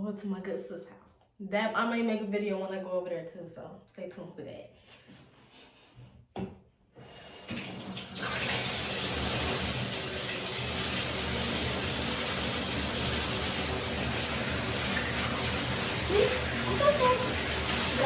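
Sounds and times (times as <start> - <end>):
tap knock: 6.4 - 6.6
water running into tub: 7.0 - 18.0.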